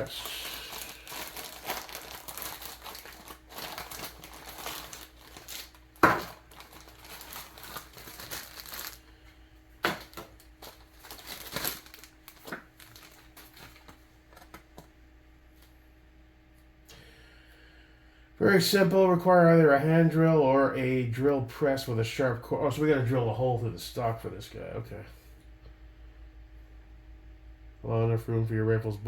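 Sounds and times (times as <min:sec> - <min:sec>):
packaging rustling and crinkling: 0:00.0 - 0:14.9.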